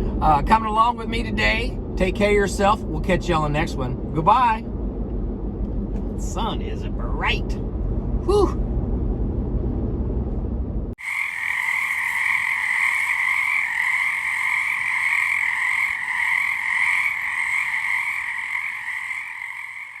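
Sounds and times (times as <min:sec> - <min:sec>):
chorus of frogs calling: 0:11.0 - 0:20.0.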